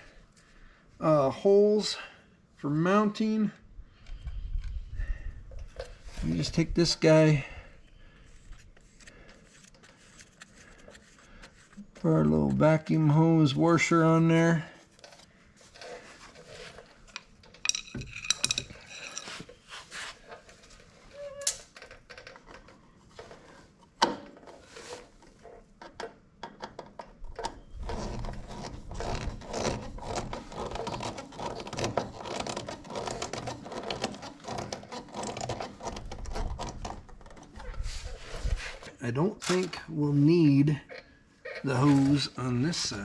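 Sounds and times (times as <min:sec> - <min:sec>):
screw driven in rattling: 0:15.8 - 0:19.6, 0:25.9 - 0:37.8.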